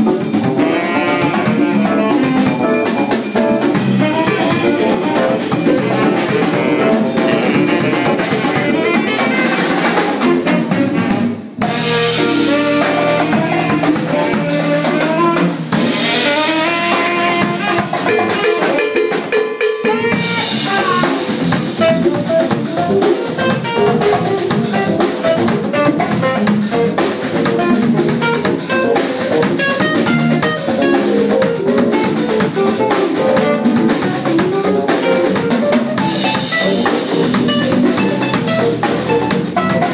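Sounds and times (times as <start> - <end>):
bass guitar: 0.0 - 18.8, 19.8 - 39.9
drum kit with rimshots: 0.0 - 39.9
piano: 0.0 - 39.9
saxophone: 0.0 - 39.9.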